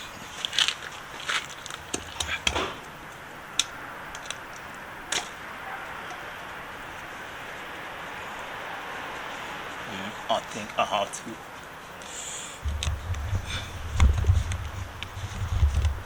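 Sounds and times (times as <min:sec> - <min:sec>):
steady background hiss: 0:00.0 - 0:16.0
hand tools and metal parts clicking: 0:00.4 - 0:04.7.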